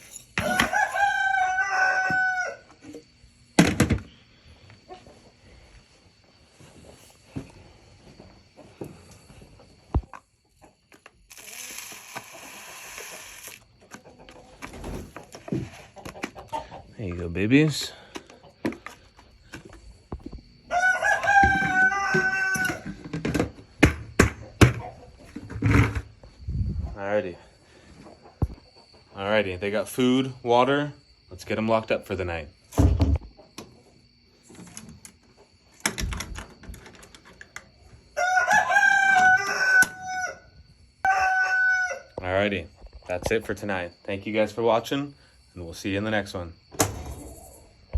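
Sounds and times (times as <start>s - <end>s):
rooster crowing: 0.4s - 2.8s, 20.6s - 22.9s, 38.1s - 42.2s.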